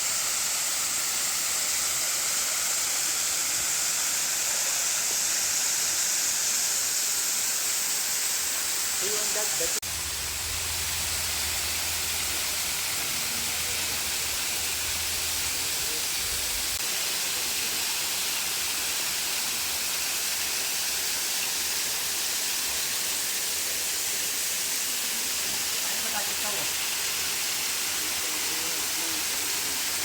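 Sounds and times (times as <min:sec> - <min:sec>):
waterfall rushing: 0:08.2 - 0:16.8
low rumble: 0:09.8 - 0:16.8.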